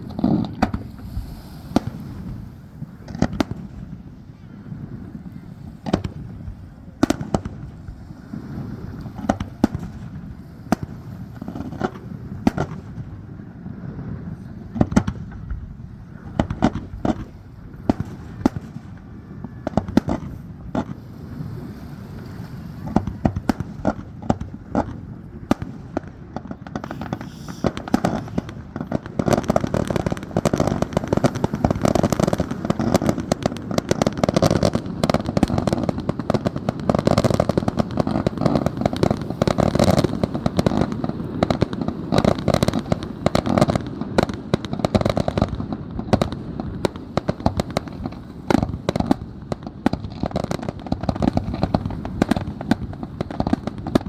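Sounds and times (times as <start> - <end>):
fireworks bursts and crackling: 0.0 - 54.0.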